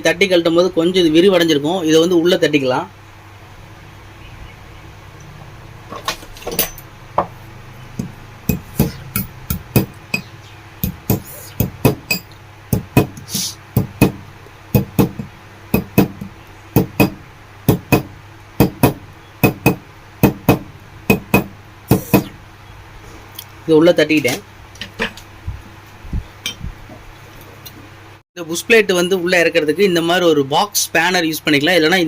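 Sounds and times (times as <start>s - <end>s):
hammer tapping metal plate: 8.0s - 13.2s, 13.8s - 14.2s, 14.8s - 22.3s.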